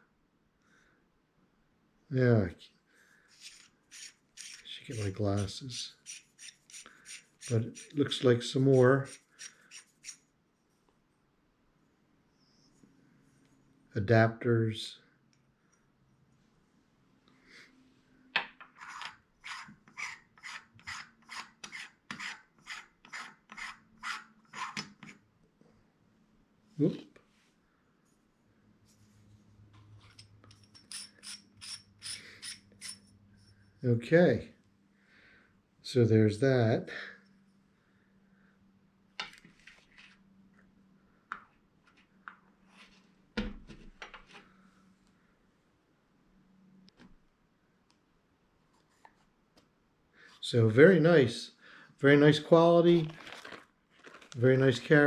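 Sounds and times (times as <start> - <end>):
metal rings screwing together: 30.0 - 33.1.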